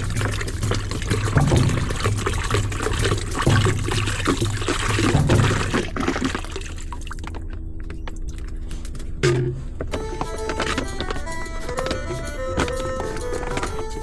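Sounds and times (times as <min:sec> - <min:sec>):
water pouring and splashing: 0:00.0 - 0:08.7
steady low hum: 0:00.0 - 0:14.0.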